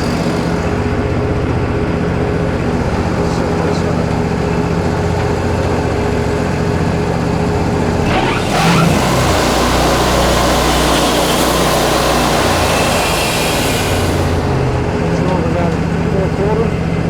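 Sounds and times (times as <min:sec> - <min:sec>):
band sawmill running: 0:00.0 - 0:17.0
band blade cutting log: 0:08.0 - 0:14.7.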